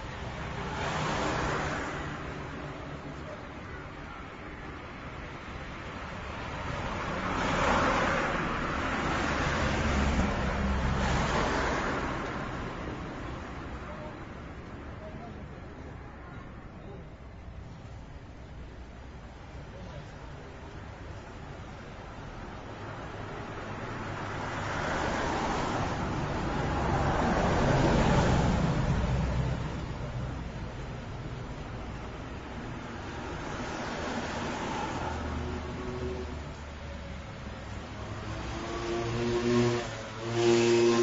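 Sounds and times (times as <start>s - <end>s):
vehicle tyre noise: 20.0s - 41.0s
car driving past: 37.8s - 41.0s.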